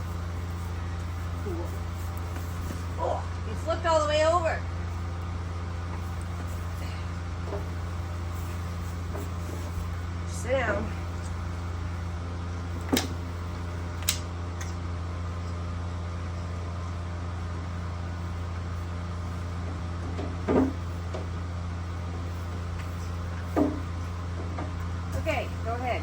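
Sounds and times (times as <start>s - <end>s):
low mechanical hum: 0.0s - 26.0s.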